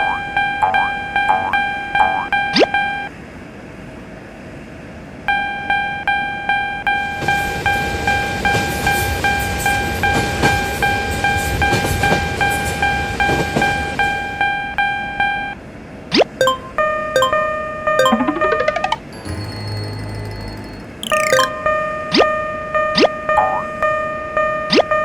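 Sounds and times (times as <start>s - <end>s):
railroad crossing bell ringing: 19.2s - 21.0s.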